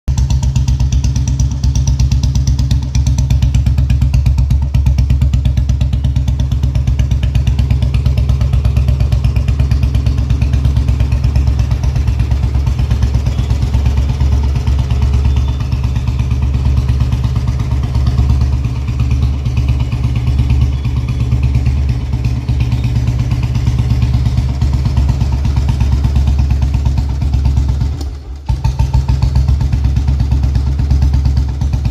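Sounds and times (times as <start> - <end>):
motorcycle engine idling: 0.1 - 31.9.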